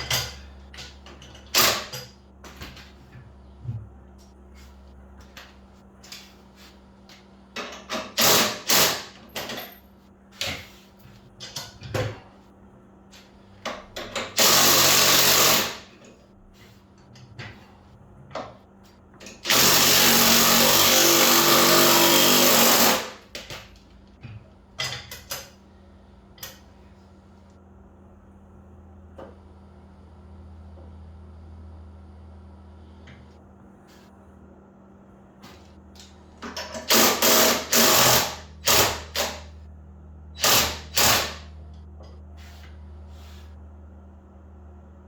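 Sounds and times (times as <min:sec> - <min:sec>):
faint steady hum: 0:00.0 - 0:45.0
power tool running: 0:14.3 - 0:15.9, 0:19.4 - 0:23.2, 0:36.8 - 0:39.4, 0:40.4 - 0:41.5.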